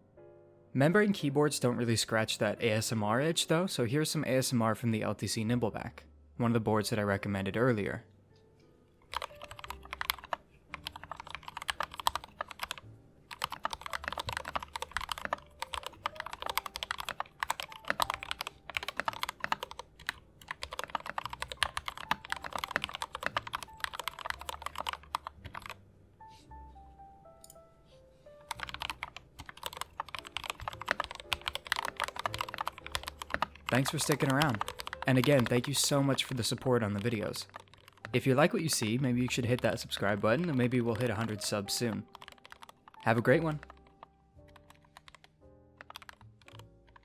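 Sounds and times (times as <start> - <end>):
soft background music: 0.0 - 47.0
mechanical keyboard typing: 9.1 - 25.8, 28.4 - 47.0.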